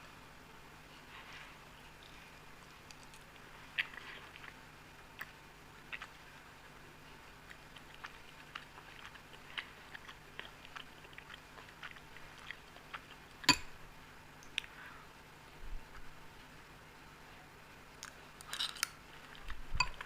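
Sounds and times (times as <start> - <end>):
close-up chewing: 1.9 - 13.8, 18.0 - 20.0.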